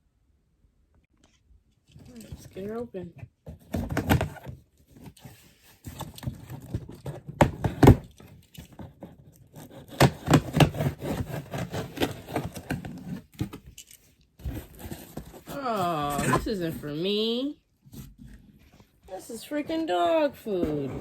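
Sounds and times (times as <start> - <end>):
cardboard tape tearing and scraping: 9.4 - 16.7.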